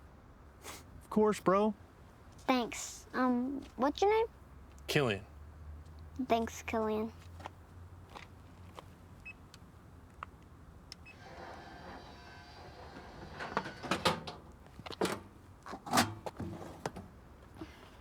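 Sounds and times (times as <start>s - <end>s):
vending machine motor whirring: 11.0s - 15.4s
knocks and clunks: 12.7s - 17.2s.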